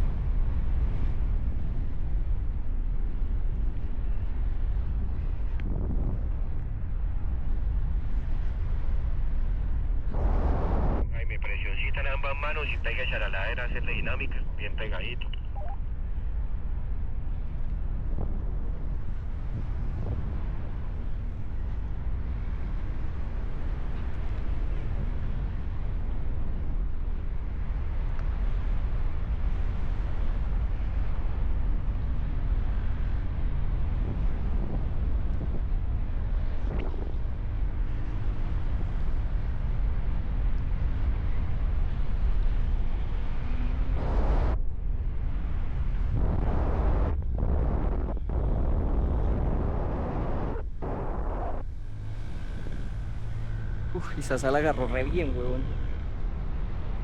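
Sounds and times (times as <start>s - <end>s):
wind buffeting microphone: 0.0s - 11.1s, 11.7s - 54.8s.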